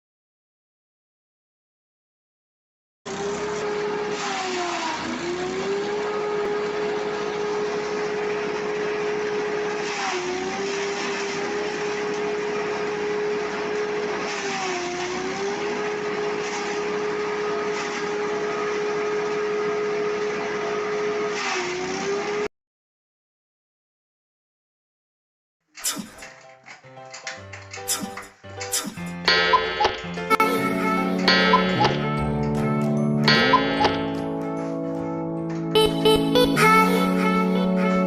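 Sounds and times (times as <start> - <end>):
grass chopper machine whining: 3.1 - 22.5
burst of chopping noise: 25.8 - 26.3, 27.9 - 30.1.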